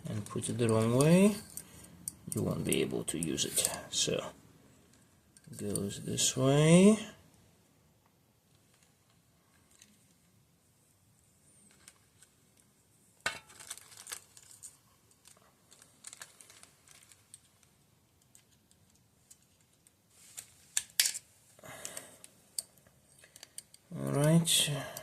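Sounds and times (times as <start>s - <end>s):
small metal parts clicking and rattling: 13.2s - 19.9s, 22.6s - 24.4s.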